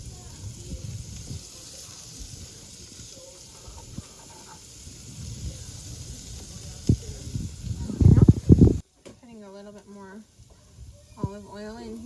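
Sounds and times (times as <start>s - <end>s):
squash sizzling in oil: 0.0s - 8.9s.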